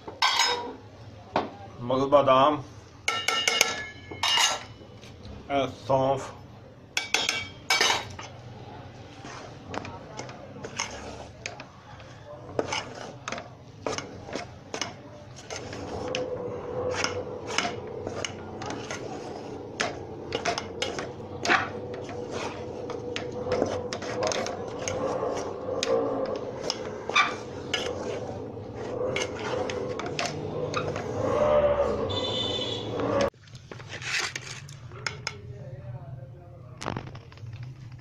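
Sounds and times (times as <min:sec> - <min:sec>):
spoon scraping a pot: 0:00.1 - 0:00.8, 0:03.1 - 0:05.2, 0:07.0 - 0:35.4
spoon clinking against pot: 0:03.1 - 0:04.7, 0:07.0 - 0:08.3.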